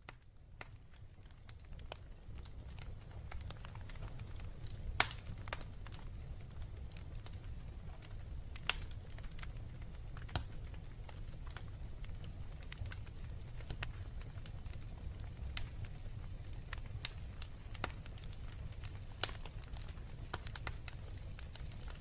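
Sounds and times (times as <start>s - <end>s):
wood fire crackling and popping: 0.0s - 22.0s.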